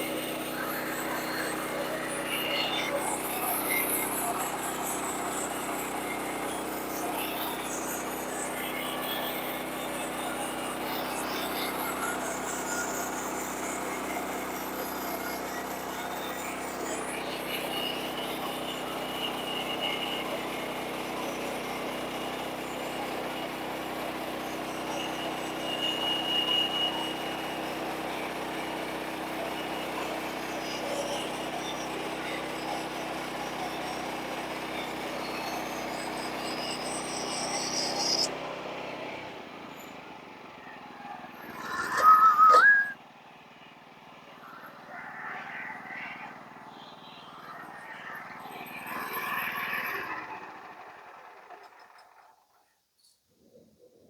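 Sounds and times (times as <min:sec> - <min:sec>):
small gas engine running: 0:00.0 - 0:42.0, 0:48.1 - 0:52.6
high-pitched rising sound: 0:41.4 - 0:43.0.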